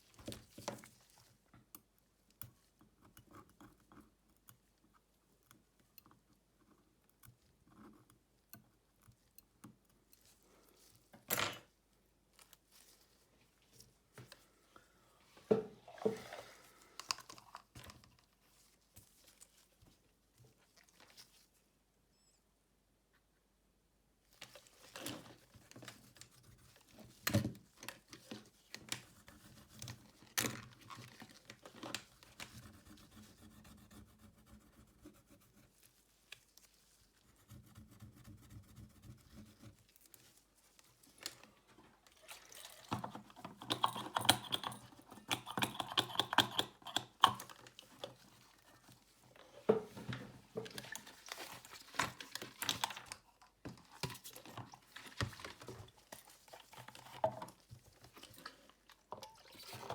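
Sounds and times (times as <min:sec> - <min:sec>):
small tools clicking and tapping: 0:43.0 - 0:48.2.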